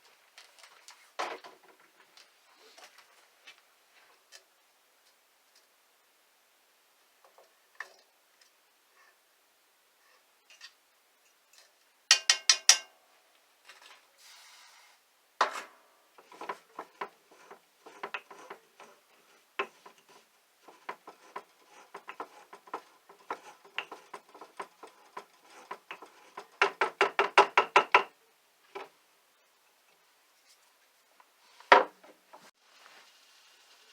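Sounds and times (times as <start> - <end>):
things being handled clattering: 15.4 - 27.4.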